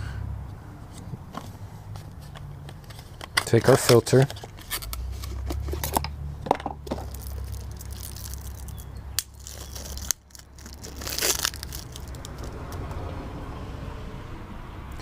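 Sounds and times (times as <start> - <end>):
packaging crinkling and rustling: 2.2 - 6.1, 6.8 - 12.8.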